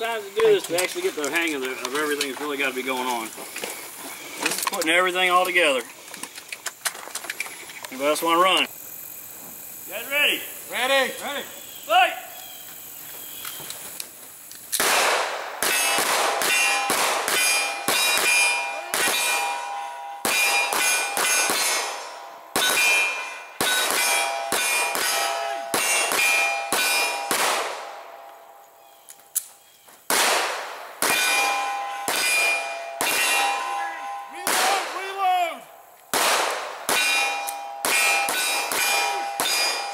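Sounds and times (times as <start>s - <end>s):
rapid pistol fire: 14.8s - 19.4s, 22.6s - 28.0s, 30.1s - 31.4s, 36.1s - 37.2s
steel targets ringing: 15.6s - 28.7s, 31.0s - 35.8s, 36.7s - 39.9s.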